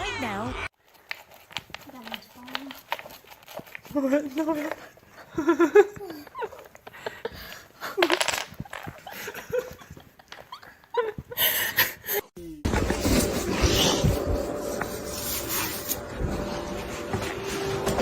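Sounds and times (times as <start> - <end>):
laughter: 5.3 - 6.8, 8.5 - 12.0.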